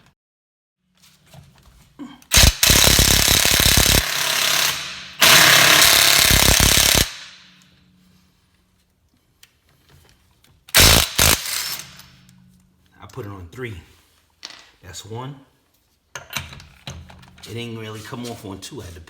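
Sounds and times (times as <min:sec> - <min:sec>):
impact wrench hammering: 0:02.3 - 0:07.6, 0:10.8 - 0:12.1.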